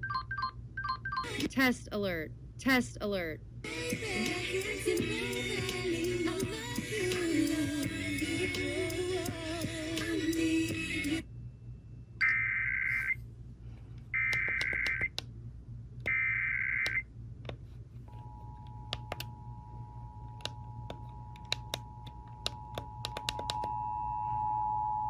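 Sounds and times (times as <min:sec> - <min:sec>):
scattered clicks: 0:14.3 - 0:15.3, 0:20.3 - 0:23.7.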